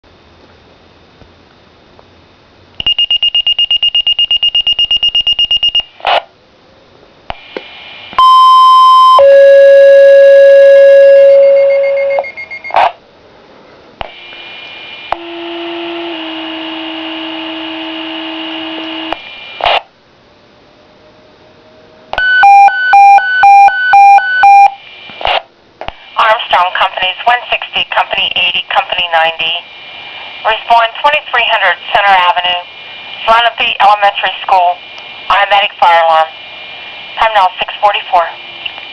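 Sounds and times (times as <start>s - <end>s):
two-tone pager tones: 2.8s - 5.9s, 8.2s - 12.8s, 22.2s - 24.8s
pager pulsing high tone: 8.2s - 12.7s
pager alert beeps: 8.2s - 12.8s.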